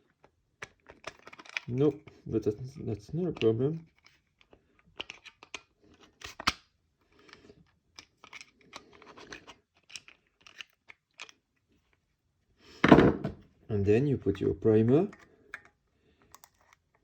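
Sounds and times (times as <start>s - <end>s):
plastic parts clicking and tapping: 0.1s - 1.9s, 3.3s - 6.6s, 7.3s - 11.4s, 15.0s - 17.0s
plastic parts scraping: 0.1s - 2.2s, 7.2s - 11.4s.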